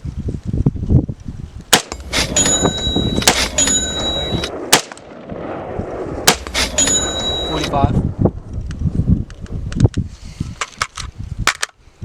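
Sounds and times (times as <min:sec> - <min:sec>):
rifle shots: 0:01.7 - 0:07.8
steel targets ringing: 0:01.9 - 0:04.6, 0:06.3 - 0:07.9.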